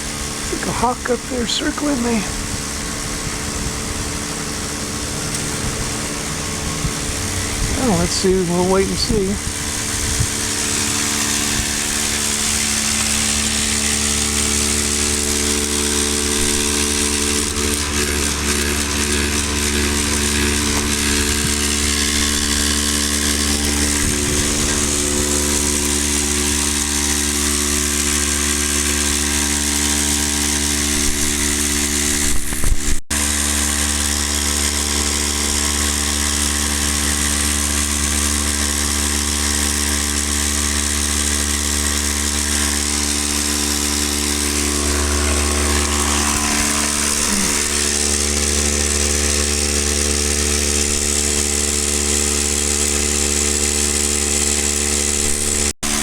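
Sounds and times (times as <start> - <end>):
dry dirt hissing over shaking deck: 0.0 - 31.9
motor humming: 0.0 - 56.0.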